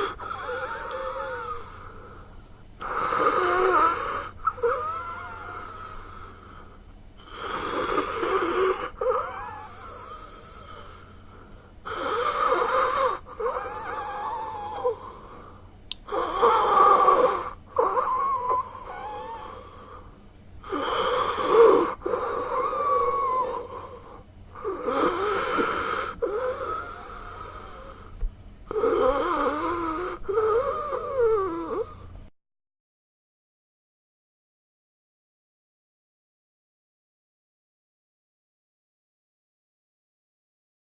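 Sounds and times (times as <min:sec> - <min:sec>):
person breathing with a wheeze: 0:00.0 - 0:32.2.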